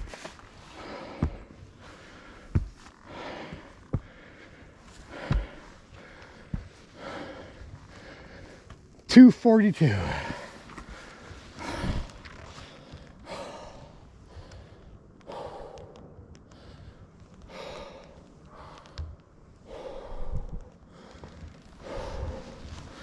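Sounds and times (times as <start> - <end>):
person breathing heavily: 0.0 - 8.8, 9.8 - 23.0.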